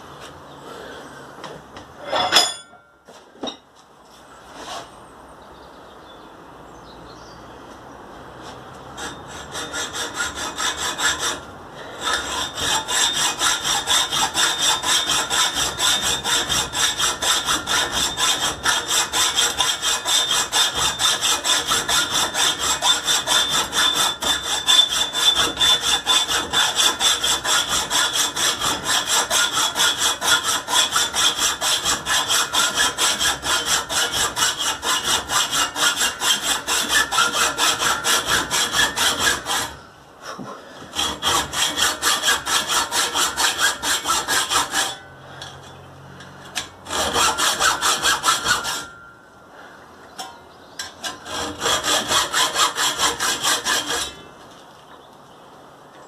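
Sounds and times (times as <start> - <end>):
hacksaw cutting metal pipe: 8.8 - 39.8, 40.8 - 49.1, 50.8 - 54.3.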